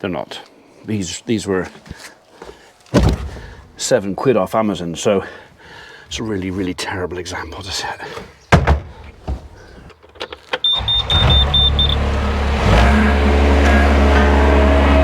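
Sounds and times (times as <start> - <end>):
short high beeps: 10.6 - 12.0
vehicle engine starting and running: 10.6 - 15.0.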